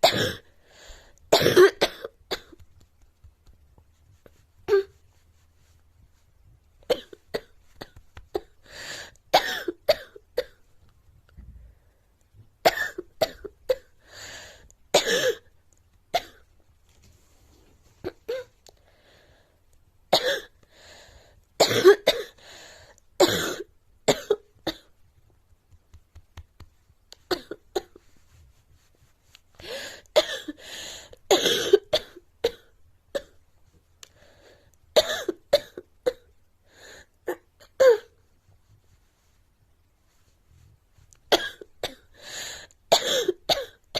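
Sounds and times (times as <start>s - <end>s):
girl coughing: 0.0s - 0.5s, 1.3s - 2.6s, 9.4s - 10.6s, 12.7s - 13.9s, 15.0s - 15.5s, 20.2s - 20.6s, 21.6s - 22.4s, 23.2s - 24.9s, 30.2s - 30.6s, 31.3s - 33.4s, 35.0s - 36.3s, 41.3s - 42.1s, 42.9s - 43.8s.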